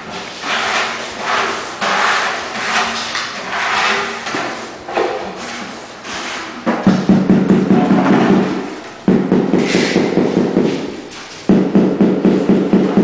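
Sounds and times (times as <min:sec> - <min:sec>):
steel trowel scraping mortar: 0:00.4 - 0:04.5.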